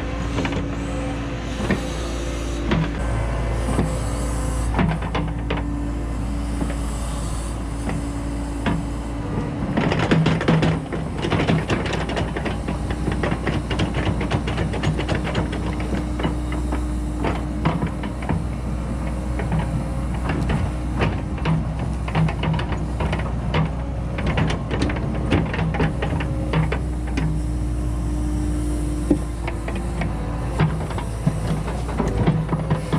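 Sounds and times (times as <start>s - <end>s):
excavator engine and hydraulics: 0.0s - 32.9s
sharp clicks and knocks: 4.6s - 5.7s, 9.7s - 27.7s, 28.9s - 32.9s.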